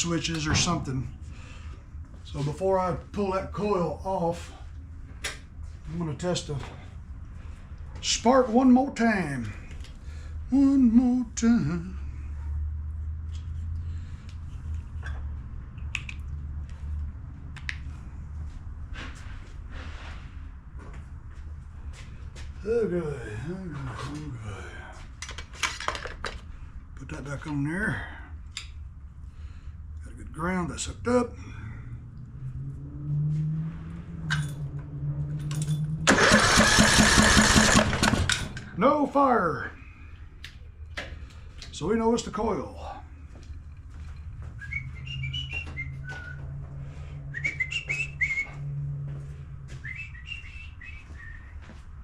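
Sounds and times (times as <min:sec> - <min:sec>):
engine cranking by starter: 0:34.2 - 0:38.8.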